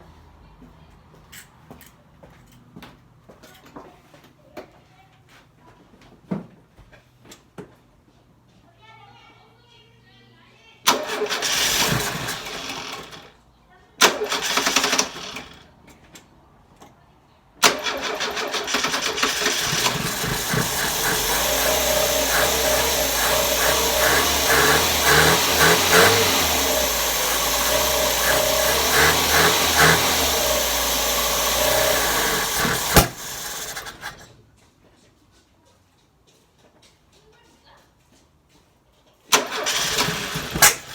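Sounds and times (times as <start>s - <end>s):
engine running unevenly: 11.5s - 13.2s, 18.8s - 34.2s.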